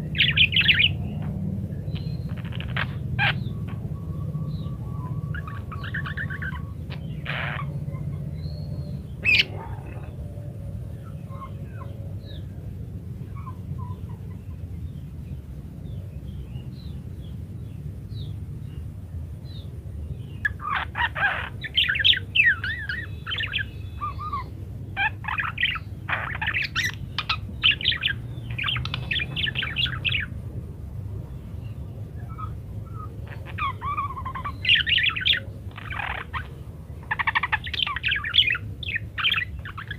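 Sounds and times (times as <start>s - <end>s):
budgerigar chirping and warbling: 0.1s - 1.3s, 1.9s - 10.2s, 11.0s - 12.4s, 13.2s - 14.6s, 20.3s - 30.4s, 32.2s - 39.9s.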